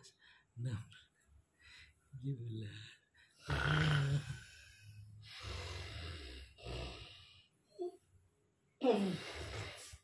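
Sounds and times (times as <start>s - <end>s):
man snoring: 3.4s - 7.4s.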